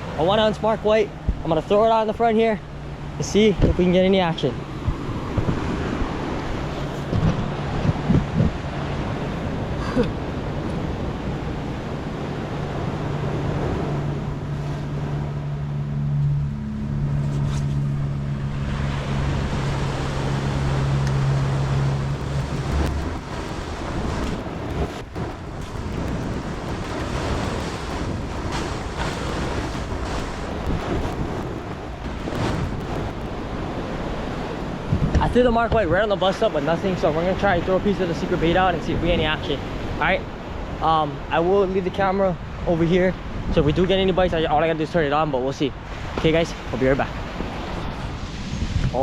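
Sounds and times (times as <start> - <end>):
wind buffeting microphone: 0.0 - 15.8, 16.5 - 40.8, 47.0 - 49.0
steady low hum: 0.0 - 35.0
ocean surf washing on shore: 0.0 - 49.0.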